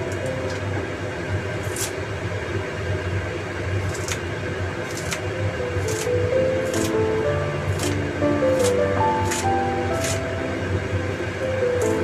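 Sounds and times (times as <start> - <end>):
low hum and hiss: 0.0 - 12.0.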